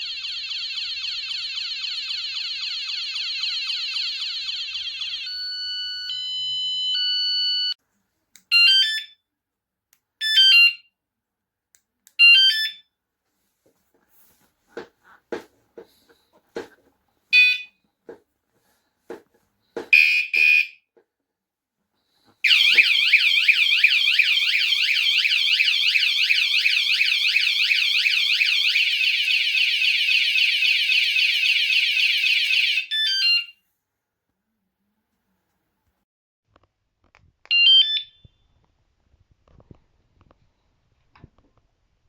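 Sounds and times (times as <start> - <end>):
loud warbling alarm siren: 22.5 - 32.9.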